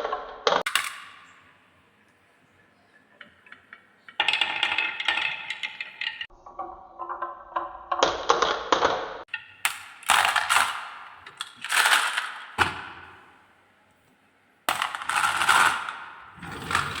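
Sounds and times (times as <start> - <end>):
marbles clattering down wooden run: 4.2 - 6.3, 9.8 - 12.6, 14.7 - 17.0.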